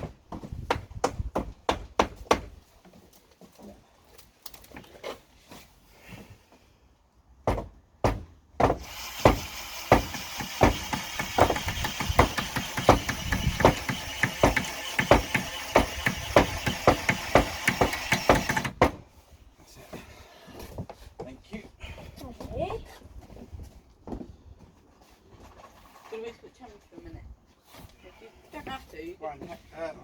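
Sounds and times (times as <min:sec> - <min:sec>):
knocks on wood: 0:07.4 - 0:19.0
drill driving screw: 0:08.8 - 0:18.8.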